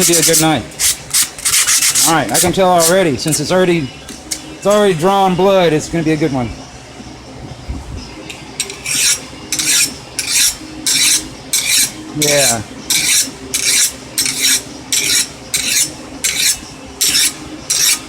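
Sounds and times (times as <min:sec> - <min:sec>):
file rasping on steel blade: 0:00.0 - 0:03.0, 0:08.6 - 0:18.0.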